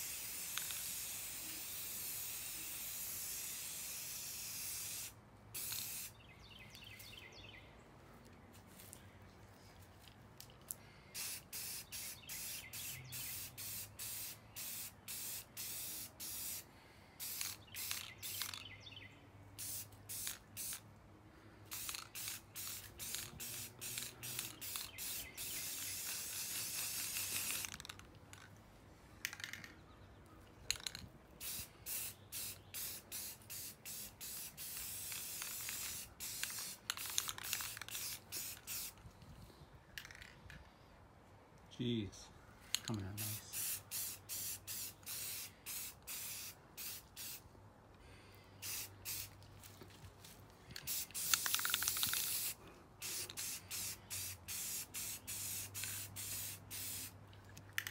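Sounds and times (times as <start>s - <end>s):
spray paint can hissing: 0.0s - 6.2s, 11.2s - 18.7s, 19.6s - 20.8s, 21.7s - 28.4s, 30.7s - 39.0s, 43.2s - 47.4s, 48.6s - 49.4s, 50.8s - 57.2s.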